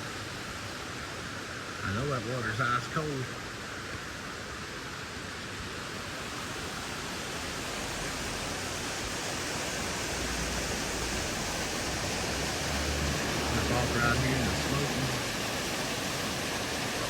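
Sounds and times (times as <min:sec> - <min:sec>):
mountain stream rushing: 0:00.0 - 0:17.0.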